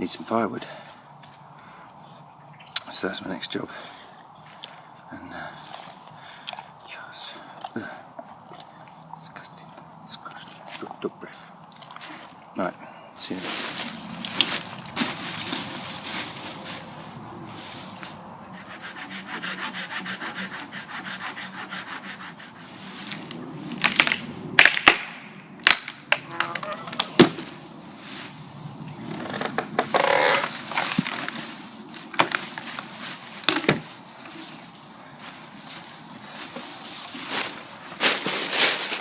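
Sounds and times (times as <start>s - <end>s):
rustling of dead wood: 3.0s - 12.5s, 13.2s - 24.3s, 25.6s - 39.0s
branches snapping: 23.1s - 27.6s, 29.2s - 33.9s.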